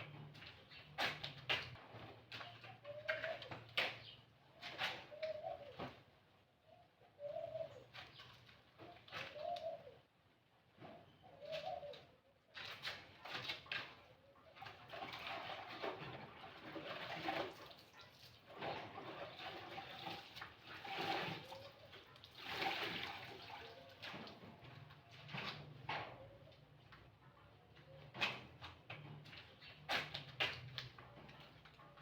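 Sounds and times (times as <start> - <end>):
dove cooing: 2.7 - 3.6, 4.8 - 6.0, 6.7 - 8.0, 8.8 - 10.1, 10.8 - 12.3
clothes sloshing in water: 12.5 - 25.8.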